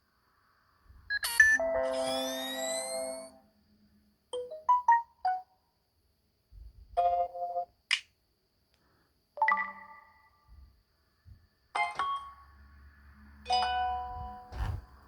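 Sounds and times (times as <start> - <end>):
notification chimes: 1.4 - 3.3.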